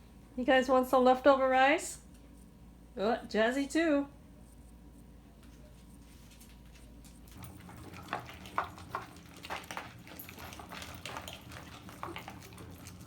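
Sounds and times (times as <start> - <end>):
dogs chewing and smacking: 6.5 - 13.0.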